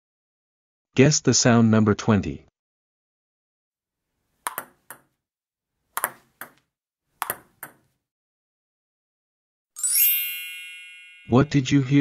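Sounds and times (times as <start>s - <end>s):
table tennis ball ticks: 4.5s - 5.1s, 6.0s - 6.6s, 7.2s - 7.9s.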